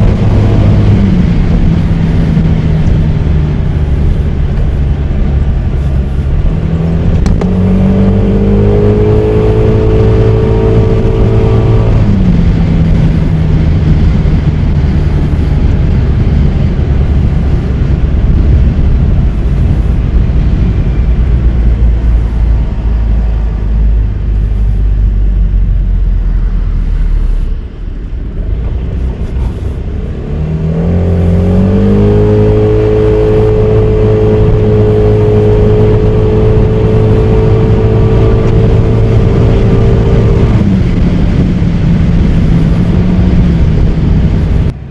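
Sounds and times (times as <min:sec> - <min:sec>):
wind and road noise: 0:00.0 - 0:44.9
scooter engine accelerating: 0:28.4 - 0:44.9.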